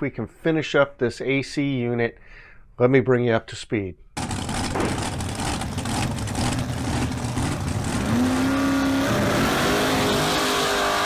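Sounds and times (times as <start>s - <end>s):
vehicle engine revving: 4.5s - 11.0s.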